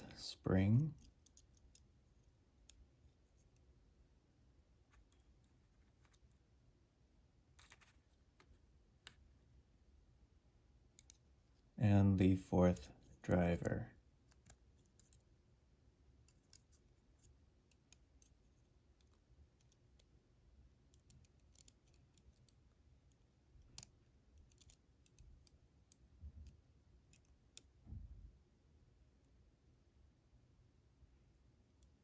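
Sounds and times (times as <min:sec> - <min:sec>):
small metal parts clicking: 0:01.0 - 0:01.9, 0:14.3 - 0:15.2, 0:16.2 - 0:20.1, 0:20.9 - 0:22.6, 0:23.6 - 0:27.7
soft low thump: 0:27.8 - 0:28.3.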